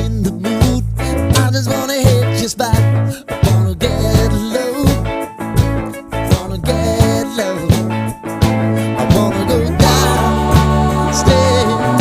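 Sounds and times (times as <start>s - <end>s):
pop music with steady beat: 0.0s - 12.0s.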